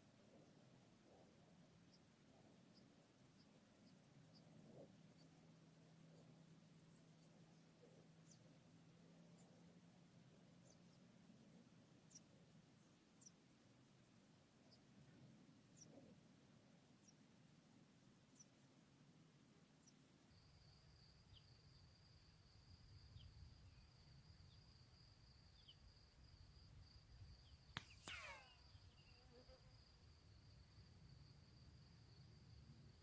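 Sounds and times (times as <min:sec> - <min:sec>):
faint insect trilling: 0:00.1 - 0:33.0
air rifle shot crack: 0:27.8 - 0:28.6
crack with short ring: 0:27.8 - 0:28.6.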